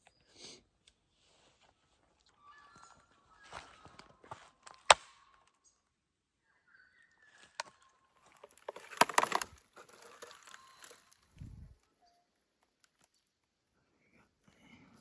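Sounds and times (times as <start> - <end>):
footsteps through dry bush: 0.9 - 5.7, 6.6 - 11.8
twigs cracking underfoot: 2.0 - 5.6, 7.3 - 11.8.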